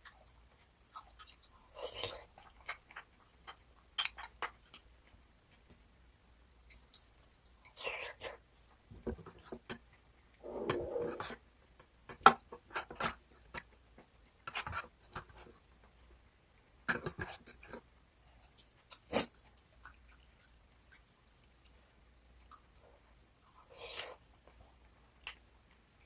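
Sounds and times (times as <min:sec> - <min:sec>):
crunching and smacking chews: 0:00.0 - 0:05.8, 0:16.9 - 0:26.0.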